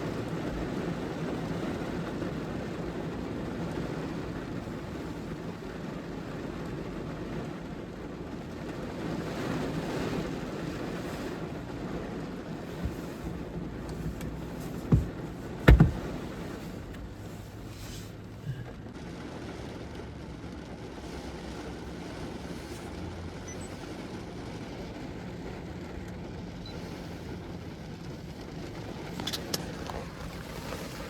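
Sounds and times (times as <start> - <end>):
car road and engine rumble: 0.0 - 31.0
sharp loud thumps: 14.9 - 16.1.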